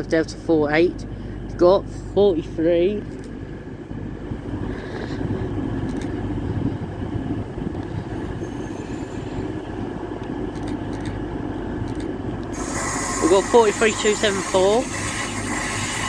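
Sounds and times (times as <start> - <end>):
train diesel engine running: 0.0 - 16.0.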